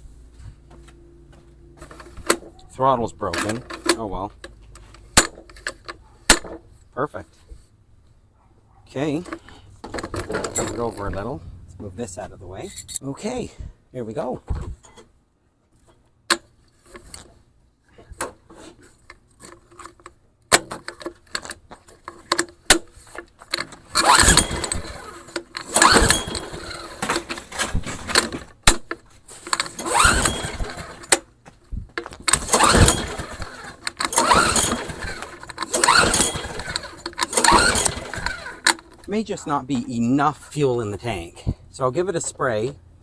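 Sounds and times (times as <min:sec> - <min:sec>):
starter cord being yanked: 0:01.8 - 0:06.8, 0:20.5 - 0:39.1
engine turning over without catching: 0:23.6 - 0:31.3, 0:32.0 - 0:39.7.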